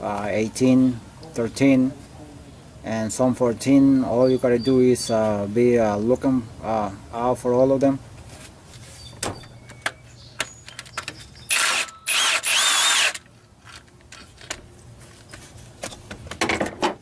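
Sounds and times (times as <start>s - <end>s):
cordless impact gun spinning bolts: 11.5s - 14.5s.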